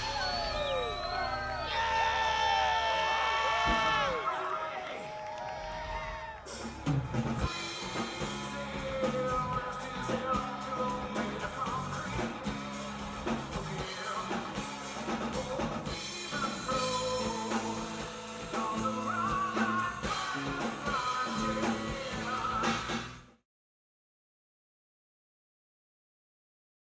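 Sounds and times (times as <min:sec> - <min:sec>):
rock band playing: 0:06.4 - 0:23.3.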